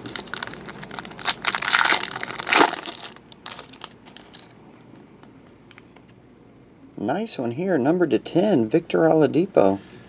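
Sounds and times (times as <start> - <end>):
plastic wrapper crinkling: 0.0 - 4.5.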